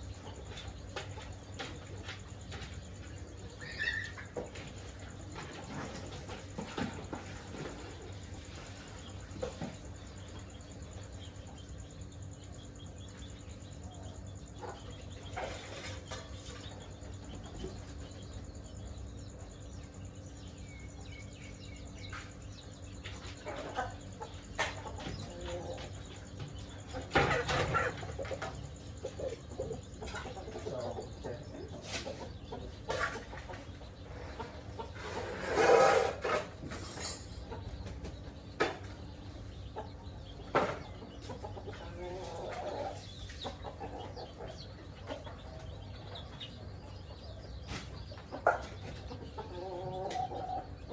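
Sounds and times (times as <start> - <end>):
chickens clucking: 0.0 - 50.9
steady low hum: 0.0 - 50.9.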